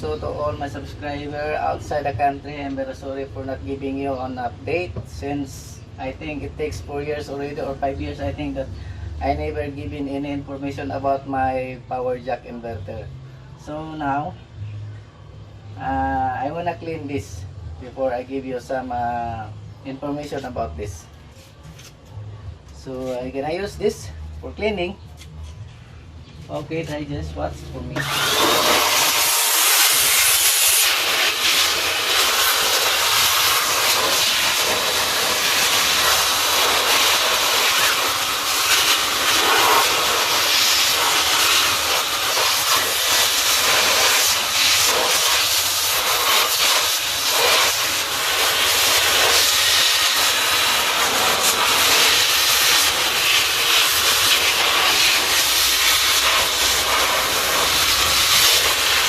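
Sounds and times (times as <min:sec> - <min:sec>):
electric cleaning tool rushing air: 0:28.0 - 0:59.0.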